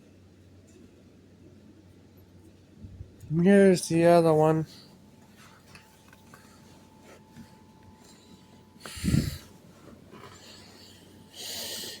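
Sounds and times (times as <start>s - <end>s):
person snorting: 8.9s - 9.5s.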